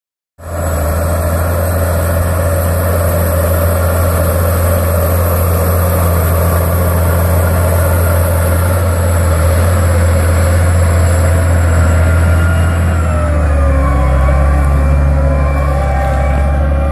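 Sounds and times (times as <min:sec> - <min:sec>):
tractor diesel engine under load: 0:00.4 - 0:16.9.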